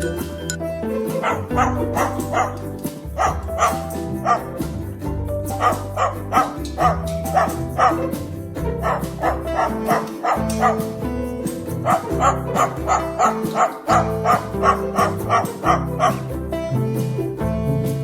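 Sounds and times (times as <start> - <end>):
bark-like yaps: 1.2 - 2.6, 3.2 - 4.5, 5.6 - 8.1, 8.8 - 10.9, 11.9 - 16.2.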